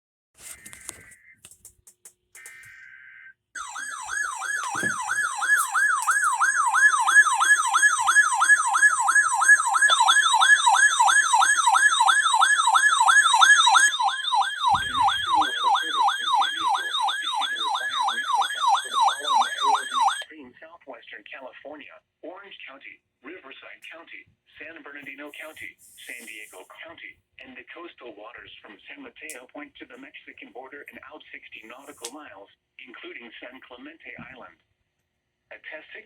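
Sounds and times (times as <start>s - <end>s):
electronic siren yelping: 2.4s - 20.3s.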